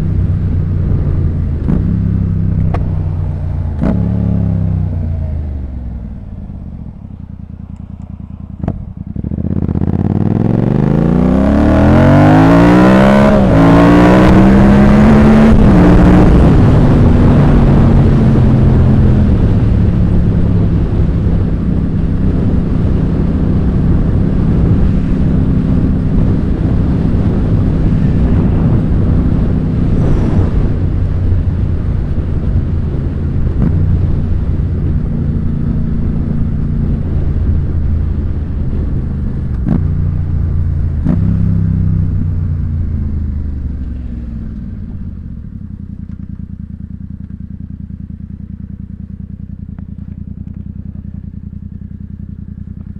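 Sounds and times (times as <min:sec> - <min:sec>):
motorcycle engine idling: 0:00.0 - 0:10.2, 0:41.6 - 0:52.9
motorcycle engine running: 0:00.0 - 0:52.9.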